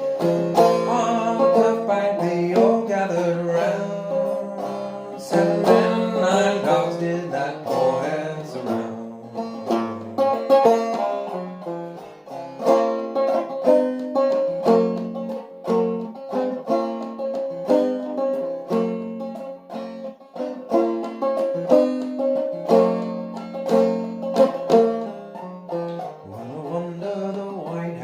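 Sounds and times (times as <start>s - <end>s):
banjo plucked instrumental: 0.0s - 28.0s.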